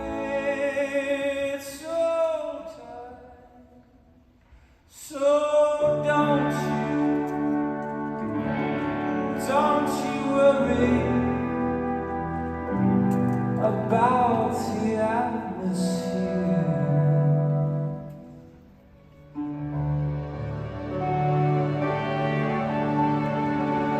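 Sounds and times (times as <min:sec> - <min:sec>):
orchestral strings sustained chords: 0:05.8 - 0:23.9.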